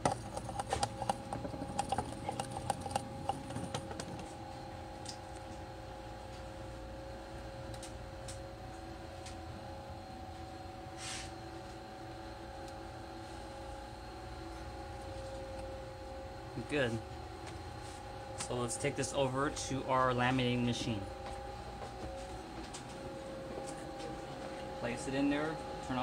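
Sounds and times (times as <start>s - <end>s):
two-tone machine hum: 0.0s - 26.0s.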